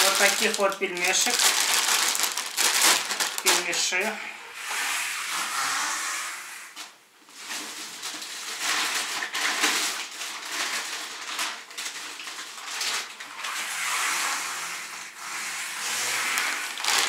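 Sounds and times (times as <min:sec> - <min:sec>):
plastic bag rustling and crinkling: 0:00.0 - 0:05.0, 0:06.8 - 0:14.0, 0:15.8 - 0:17.0.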